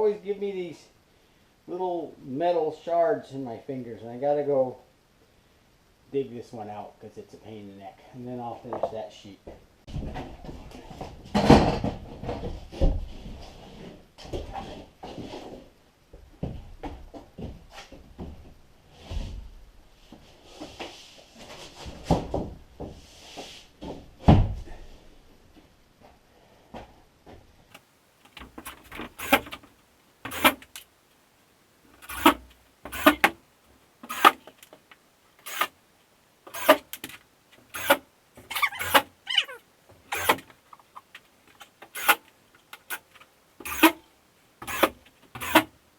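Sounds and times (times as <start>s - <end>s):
sharp even strokes: 32.0s - 33.3s, 34.0s - 34.5s, 35.4s - 35.8s, 36.5s - 37.0s, 37.7s - 40.4s.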